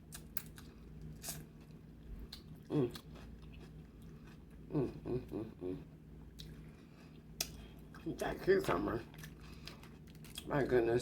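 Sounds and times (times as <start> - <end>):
chewing and crunching cucumber: 0.0 - 10.8
hummed voice sounds: 2.7 - 3.0, 4.7 - 6.0.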